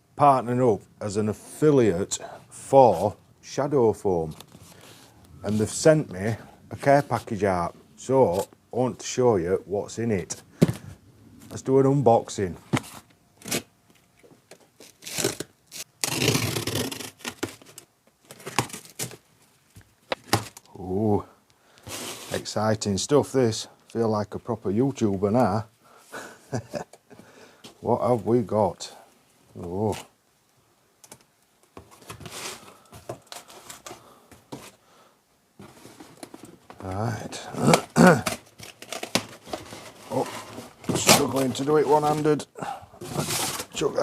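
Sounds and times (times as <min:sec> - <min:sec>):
rustles and clicks of handling: 0:04.2 - 0:07.5, 0:31.0 - 0:34.8, 0:35.6 - 0:42.4
packaging being torn open: 0:14.8 - 0:19.2.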